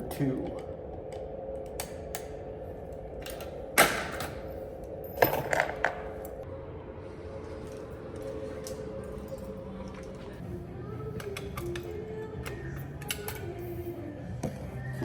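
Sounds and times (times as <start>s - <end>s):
steady electrical hum: 0.0s - 15.0s.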